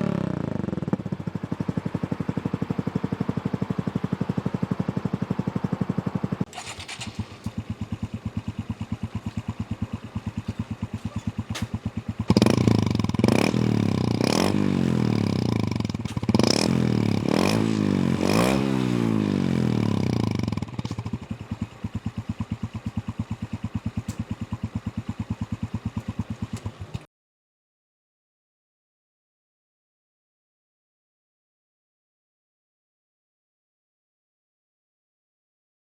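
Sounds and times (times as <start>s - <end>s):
motorcycle engine idling and revving: 0.0s - 27.1s.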